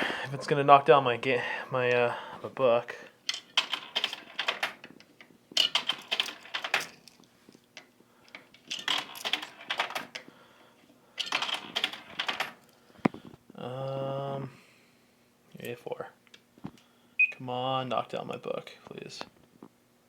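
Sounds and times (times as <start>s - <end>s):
coins rattling through coin slot: 3.3s - 4.9s, 5.6s - 7.2s, 8.4s - 10.2s, 11.2s - 12.6s.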